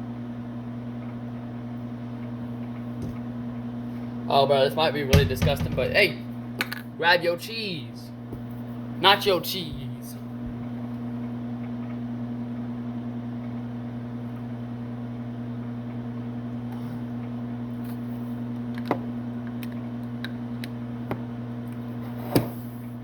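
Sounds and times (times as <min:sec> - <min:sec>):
kitchen appliance humming: 0:00.0 - 0:23.0
loud knock: 0:05.2 - 0:06.0.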